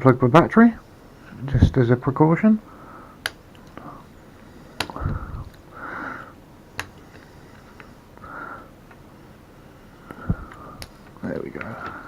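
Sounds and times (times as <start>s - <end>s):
breathing through the nose: 2.7s - 11.0s
small sharp clicks: 3.2s - 3.9s, 4.8s - 5.6s, 6.8s - 7.9s, 10.1s - 12.0s.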